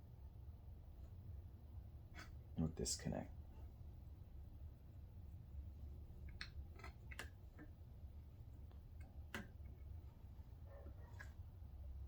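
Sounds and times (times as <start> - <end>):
faint clicks and taps: 6.2 - 7.8, 8.6 - 11.5.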